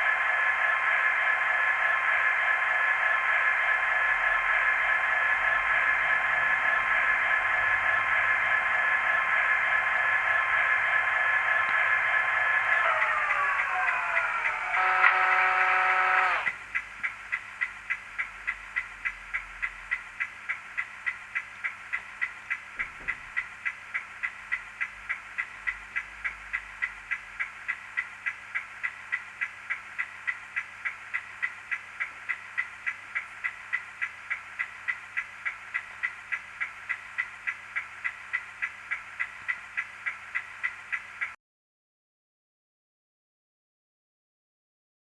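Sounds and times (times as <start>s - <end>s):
steady even ticking: 15.6s - 41.4s.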